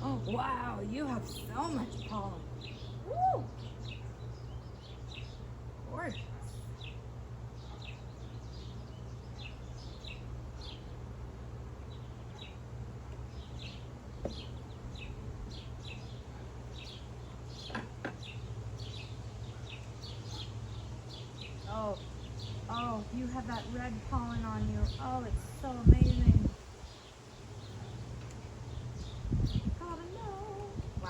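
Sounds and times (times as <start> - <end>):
small bird chirping: 0.0 - 11.0, 11.8 - 31.0
steady low hum: 0.0 - 31.0
light knocks: 14.2 - 14.5, 17.6 - 18.3.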